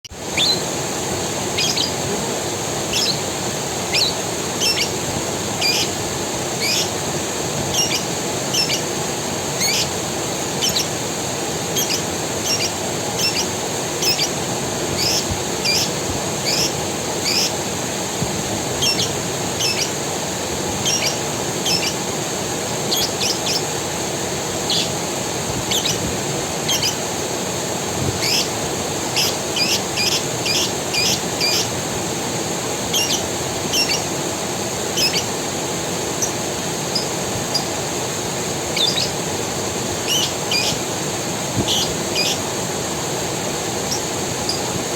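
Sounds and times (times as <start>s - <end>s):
forest creek rushing: 0.1s - 44.9s
steady high hiss: 0.1s - 44.9s
bird chirping: 0.3s - 0.7s, 1.4s - 2.0s, 2.8s - 3.3s, 3.9s - 5.0s, 5.6s - 6.0s, 6.6s - 7.0s, 7.7s - 8.9s, 9.5s - 11.0s, 11.7s - 17.6s, 18.7s - 20.1s, 20.7s - 22.1s, 22.8s - 23.8s, 24.6s - 25.0s, 25.7s - 27.0s, 28.2s - 31.8s, 32.9s - 34.1s, 34.9s - 35.3s, 36.2s - 37.8s, 38.7s - 39.2s, 40.0s - 40.8s, 41.6s - 42.4s, 43.8s - 44.7s.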